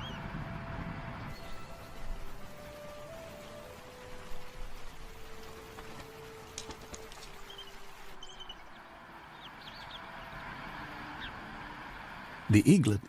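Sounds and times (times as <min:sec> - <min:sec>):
steady hiss: 0:01.3 - 0:08.8
high bird chirps: 0:07.4 - 0:10.3.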